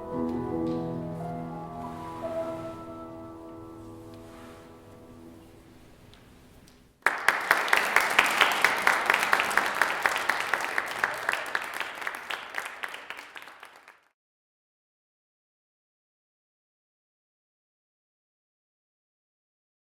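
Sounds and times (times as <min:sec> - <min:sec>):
faint music notes: 0:00.0 - 0:06.4
audience applauding: 0:07.0 - 0:14.1.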